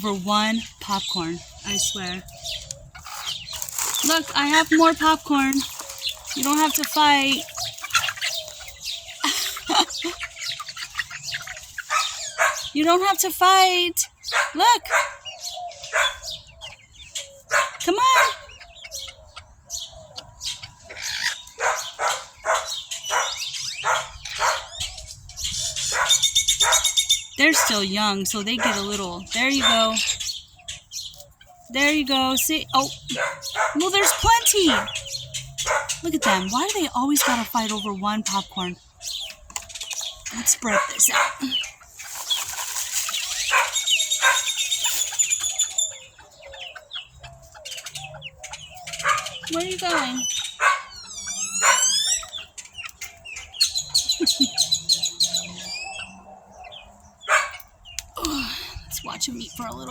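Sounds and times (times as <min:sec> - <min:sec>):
chickens clucking: 0:00.0 - 0:59.9
young hens chirping: 0:00.0 - 0:59.9
chickens flapping and scrambling: 0:02.2 - 0:12.6, 0:39.2 - 0:55.3
dog barking: 0:11.9 - 0:12.8, 0:14.3 - 0:15.3, 0:15.9 - 0:16.3, 0:17.5 - 0:18.5, 0:21.5 - 0:24.8, 0:25.9 - 0:27.0, 0:27.6 - 0:27.8, 0:28.6 - 0:28.9, 0:33.1 - 0:35.0, 0:35.6 - 0:36.5, 0:40.7 - 0:41.5, 0:43.5 - 0:44.6, 0:49.0 - 0:52.0, 0:57.2 - 0:57.7.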